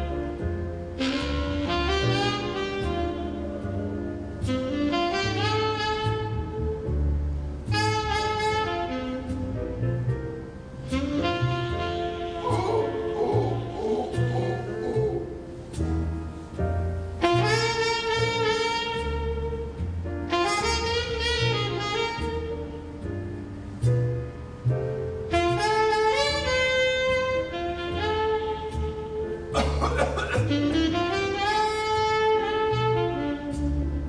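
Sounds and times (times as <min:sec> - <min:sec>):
low bass notes: 0:09.2 - 0:21.6, 0:28.6 - 0:31.3
saxophone long held notes: 0:10.9 - 0:15.4, 0:30.2 - 0:34.0.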